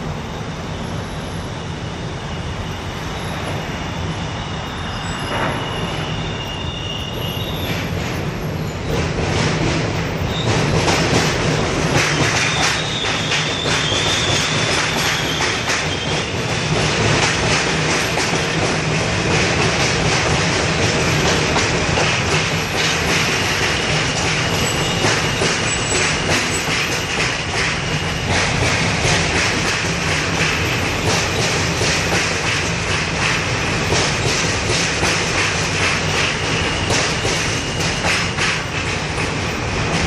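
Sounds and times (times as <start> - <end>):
train wheels rumbling on rails: 0.0 - 40.0
high wheel squeal: 0.1 - 9.1, 10.0 - 16.7, 22.3 - 32.1, 36.0 - 39.8
wheels clacking: 8.8 - 40.0.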